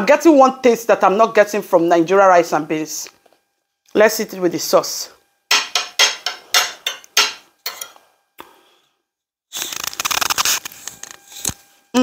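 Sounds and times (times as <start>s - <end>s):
spoon scraping a plate: 5.6s - 8.0s
close-up crackling of food: 9.5s - 11.6s.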